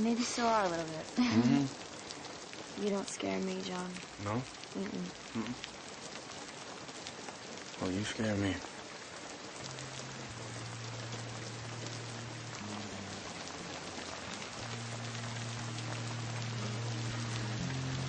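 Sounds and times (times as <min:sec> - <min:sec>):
heavy rain falling: 0:00.0 - 0:18.0
low held music notes: 0:09.6 - 0:18.0.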